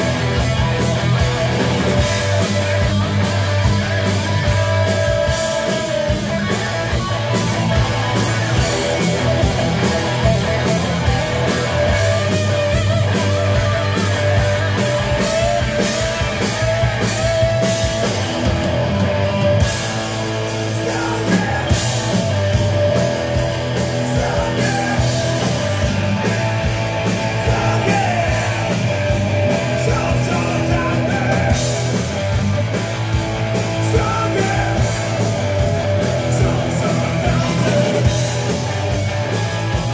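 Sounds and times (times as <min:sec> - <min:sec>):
bass and drums: 0:00.0 - 0:39.9
electric guitar: 0:00.0 - 0:39.9
person singing: 0:20.8 - 0:22.0, 0:24.1 - 0:25.5, 0:27.4 - 0:31.7, 0:33.8 - 0:35.2.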